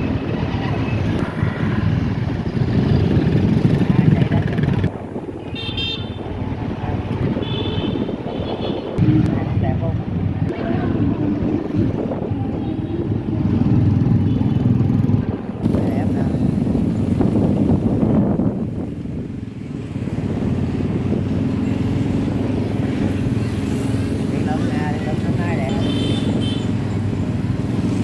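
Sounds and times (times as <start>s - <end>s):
motorbike traffic rumble: 0.0s - 28.0s
crowd chatter: 9.0s - 14.1s.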